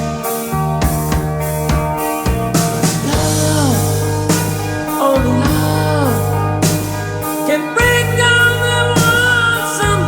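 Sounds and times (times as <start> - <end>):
electric guitar bending notes: 0.0 - 10.0
drum hits: 0.8 - 7.2
held bass note: 1.1 - 8.9.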